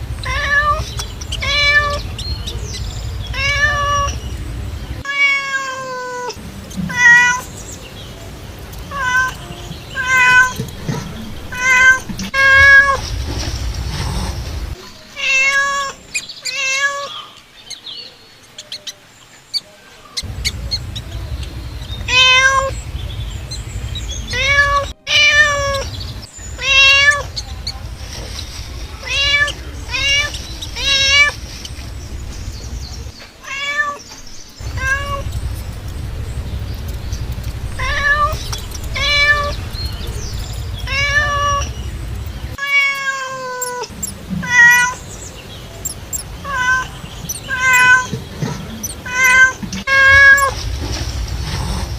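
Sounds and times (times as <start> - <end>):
low rumble: 0.0 - 5.0, 9.6 - 14.8, 20.2 - 33.2, 34.6 - 42.6, 50.1 - 51.9
cat meowing: 0.2 - 2.7, 3.3 - 4.2, 5.0 - 7.5, 8.9 - 13.0, 15.0 - 17.4, 20.8 - 22.8, 24.0 - 26.0, 26.6 - 27.9, 28.9 - 31.4, 33.4 - 41.8, 42.4 - 45.0, 46.4 - 50.6.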